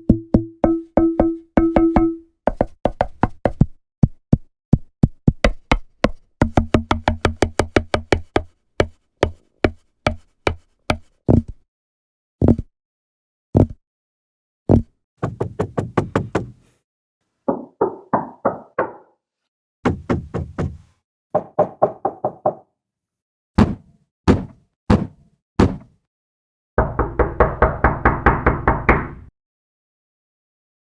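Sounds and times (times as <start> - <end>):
knocking on a door: 0.1 - 4.2, 5.3 - 11.5, 21.4 - 22.6, 26.8 - 29.2.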